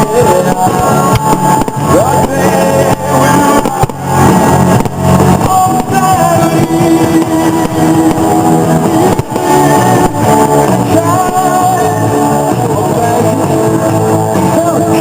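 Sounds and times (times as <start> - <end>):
rock music with singing: 0.0 - 15.0.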